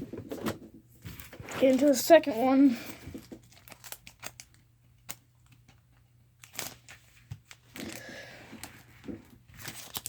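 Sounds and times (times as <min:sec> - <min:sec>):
foil pack crinkling: 0:02.8 - 0:05.8, 0:06.4 - 0:10.0.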